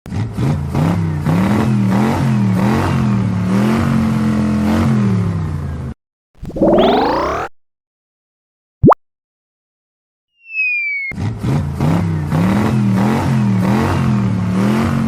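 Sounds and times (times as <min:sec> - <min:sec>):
short rising sweep: 0:06.4 - 0:07.5.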